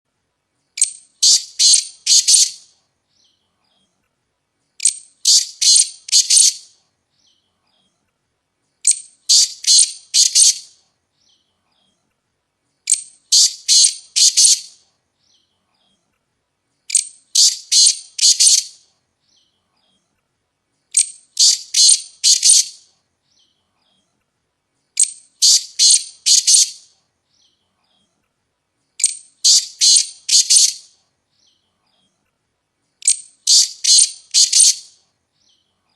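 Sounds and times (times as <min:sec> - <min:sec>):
partridge calling: 0:00.8 - 0:02.7, 0:04.8 - 0:06.6, 0:08.8 - 0:10.7, 0:12.9 - 0:14.8, 0:16.9 - 0:18.8, 0:21.0 - 0:22.8, 0:25.0 - 0:26.9, 0:29.0 - 0:30.9, 0:33.0 - 0:34.9.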